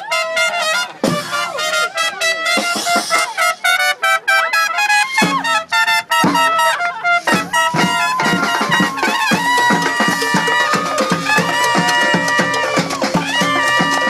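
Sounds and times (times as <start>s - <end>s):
brass band playing: 0.0s - 14.0s
drum hits: 7.3s - 14.0s.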